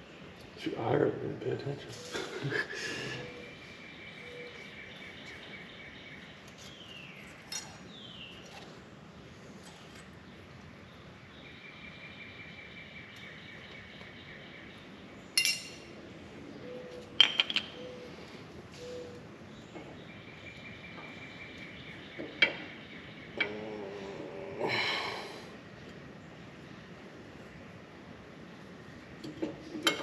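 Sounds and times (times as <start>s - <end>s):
metal tools clinking: 15.4s - 15.9s.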